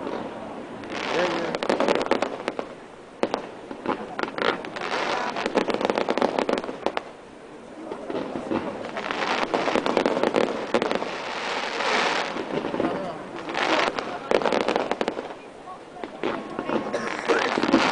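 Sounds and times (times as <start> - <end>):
fireworks crackling and popping: 0.0 - 17.9.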